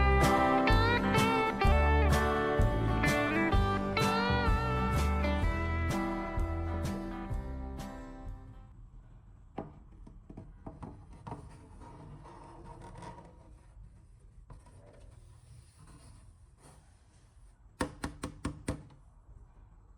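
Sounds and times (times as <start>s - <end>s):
faint rubbing and scraping: 10.4s - 17.7s.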